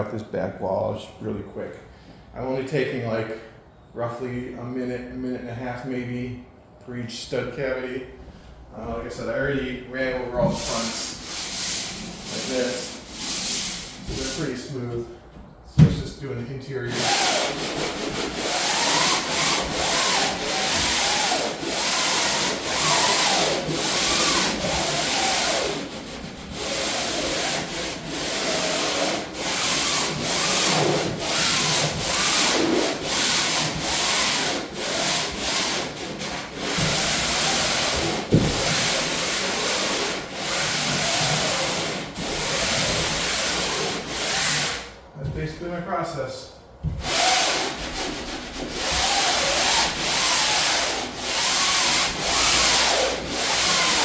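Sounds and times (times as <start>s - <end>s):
sander rubbing over plywood: 10.2s - 14.7s, 16.9s - 44.9s, 47.0s - 54.0s.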